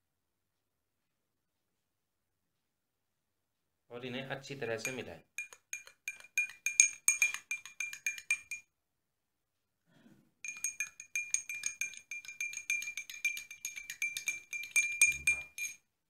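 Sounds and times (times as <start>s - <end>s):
spoon clinking against glass: 4.8s - 8.7s, 10.4s - 15.9s.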